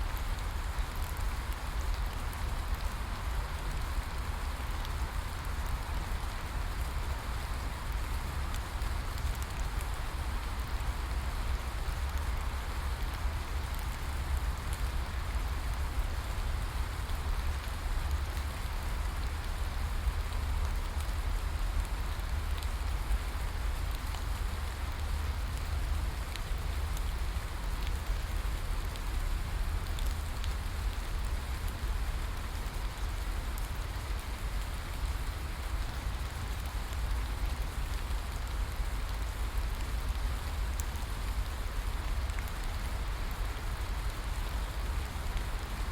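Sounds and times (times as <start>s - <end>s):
steady rain hiss: 0.0s - 45.9s
raindrop ticks: 8.5s - 9.8s, 16.7s - 45.9s.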